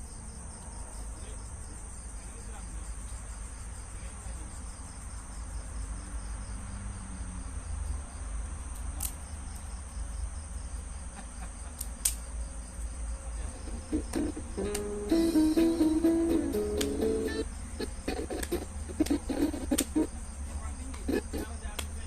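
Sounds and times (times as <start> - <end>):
crickets trilling: 0.0 - 22.0
sharp clicks: 16.8 - 17.0, 17.8 - 20.1.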